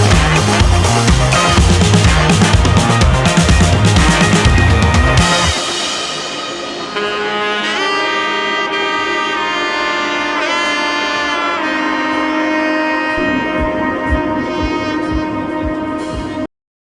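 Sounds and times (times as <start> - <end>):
steady low beat: 0.0 - 7.2, 13.1 - 16.5
brass-like melody: 0.0 - 16.5.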